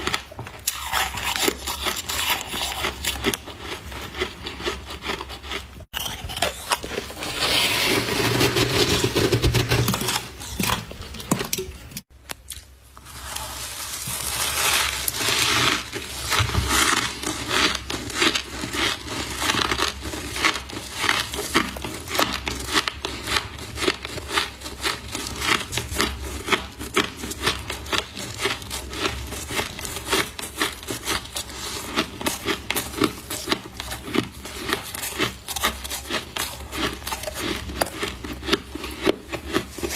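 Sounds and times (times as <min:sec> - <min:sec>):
scraping: 0:05.9 - 0:12.1
frost crunching: 0:12.5 - 0:39.9.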